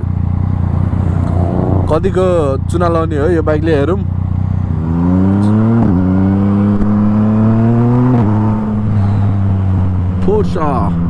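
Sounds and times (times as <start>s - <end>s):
motorcycle engine accelerating: 0.0s - 10.0s.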